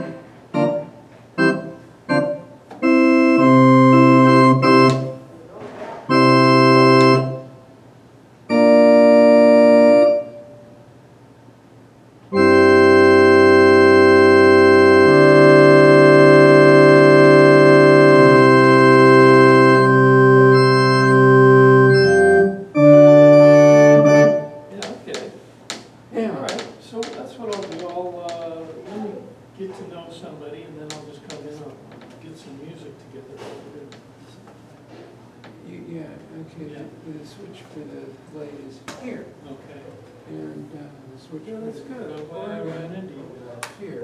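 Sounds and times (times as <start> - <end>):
electronic organ playing chords: 0.0 - 5.5, 6.1 - 7.8, 8.4 - 10.9, 12.3 - 25.0.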